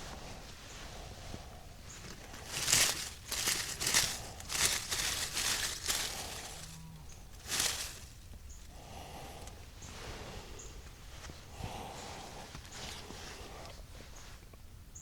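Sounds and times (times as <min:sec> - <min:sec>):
dry leaves crunching and rustling: 0:01.8 - 0:08.9.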